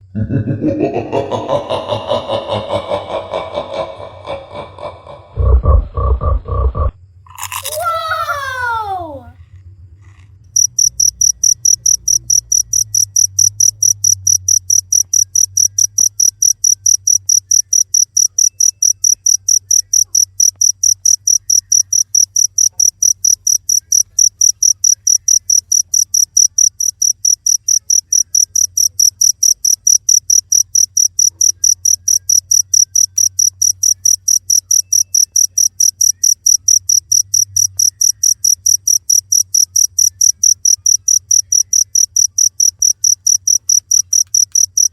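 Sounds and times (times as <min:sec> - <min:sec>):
cricket chirping: 0:09.8 - 0:44.9.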